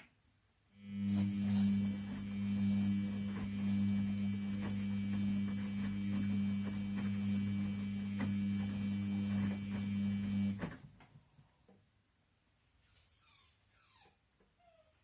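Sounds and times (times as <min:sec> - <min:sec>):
washing machine motor hum: 0:00.7 - 0:11.0.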